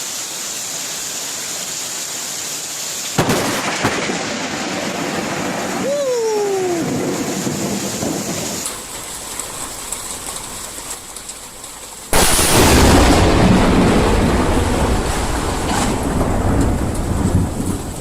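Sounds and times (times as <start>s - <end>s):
steady rain: 0.0s - 18.0s
thunder crack and rumble: 3.2s - 5.9s, 6.6s - 10.8s, 12.1s - 18.0s.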